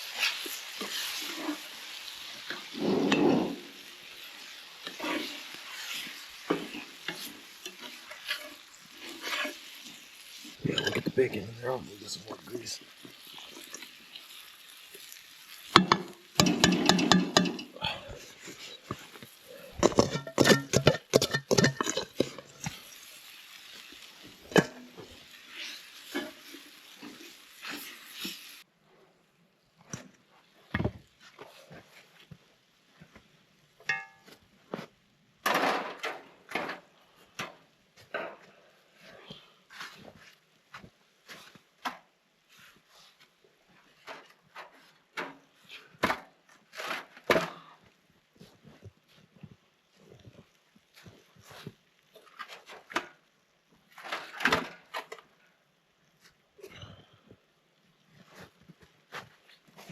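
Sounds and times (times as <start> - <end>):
utensil scraping a pan: 0.0 - 11.4, 13.2 - 28.6
meat sizzling: 0.0 - 28.7
utensil knocking against pan: 19.8 - 22.4.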